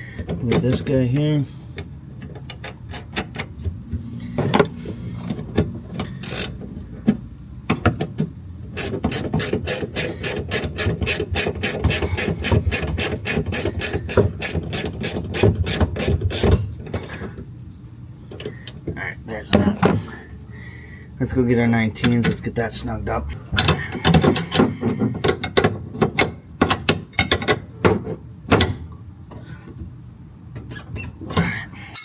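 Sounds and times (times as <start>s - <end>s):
ratchet wrench clicking: 6.0s - 6.6s, 8.8s - 17.1s.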